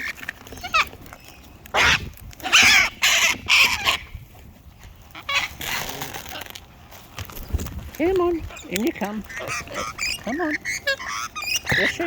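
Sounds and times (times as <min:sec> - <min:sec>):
cockatoos screeching: 0:00.0 - 0:04.2, 0:05.1 - 0:06.6, 0:08.4 - 0:12.0.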